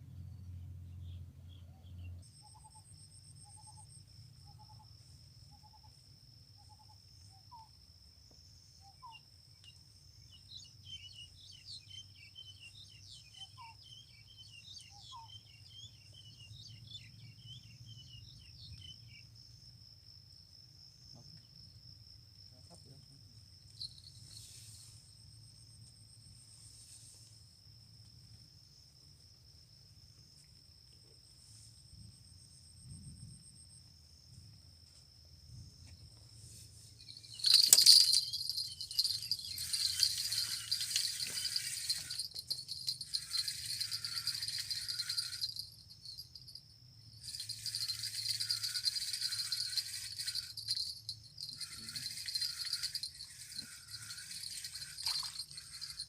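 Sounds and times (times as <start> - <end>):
insects trilling: 3.5 - 32.6, 35.8 - 56.0
high-pitched rattling buzz: 37.0 - 56.0.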